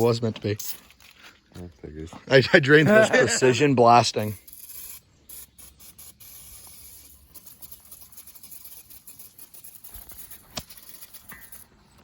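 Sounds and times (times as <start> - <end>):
aerosol can spraying hiss: 4.3 - 11.6.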